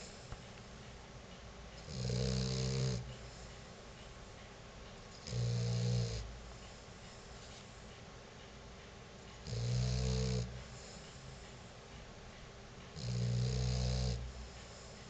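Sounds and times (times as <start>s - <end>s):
pet snoring: 1.8s - 3.4s, 5.2s - 6.4s, 9.4s - 11.6s, 13.0s - 15.0s.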